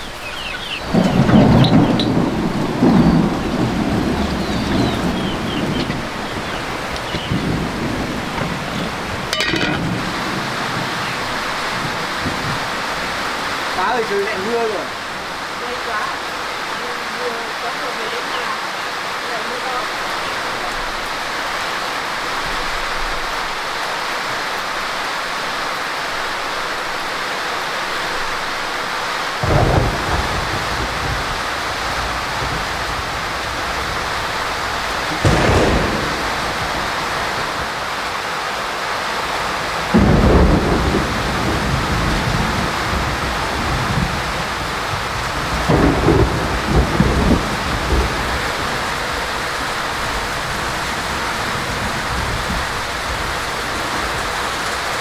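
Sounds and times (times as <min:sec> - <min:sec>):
thunder rumbling: 0:00.0 - 0:18.2, 0:29.4 - 0:55.0
heavy rain falling: 0:00.0 - 0:55.0.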